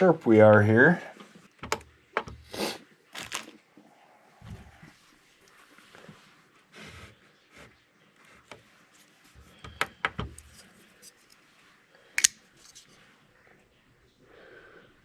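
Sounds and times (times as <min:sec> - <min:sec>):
pocket knife clicks and rubs: 0:12.2 - 0:12.9.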